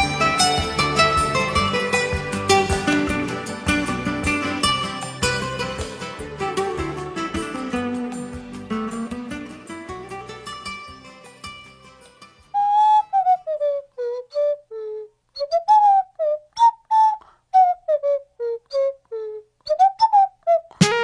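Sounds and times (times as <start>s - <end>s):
guitar-backed song: 0.0s - 12.6s
whistle-like sliding melody: 12.6s - 14.6s, 15.4s - 18.9s, 19.7s - 21.0s.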